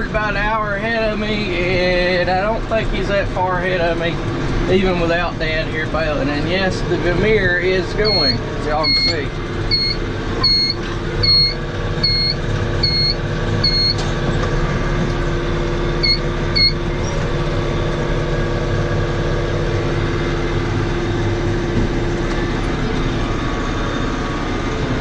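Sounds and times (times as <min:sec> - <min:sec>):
vehicle engine running: 0:00.0 - 0:25.0
high electronic beep: 0:08.0 - 0:14.0, 0:16.0 - 0:16.8.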